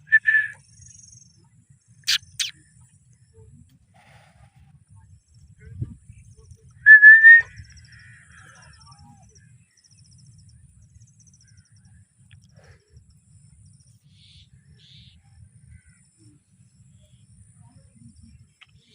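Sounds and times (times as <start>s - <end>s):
parrot whistled call: 0.1s - 0.6s, 2.1s - 2.5s, 6.9s - 7.5s
high chirps and twittering: 2.1s - 2.5s.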